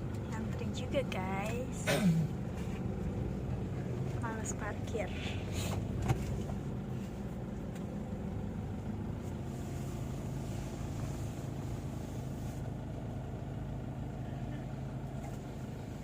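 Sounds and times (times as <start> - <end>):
car engine humming: 0.0 - 16.0.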